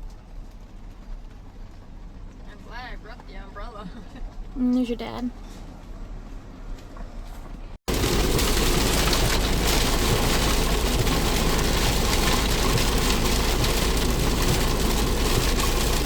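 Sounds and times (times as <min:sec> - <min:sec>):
rain on a car: 0:00.0 - 0:04.3, 0:07.9 - 0:16.0
car driving rumble: 0:05.3 - 0:16.0.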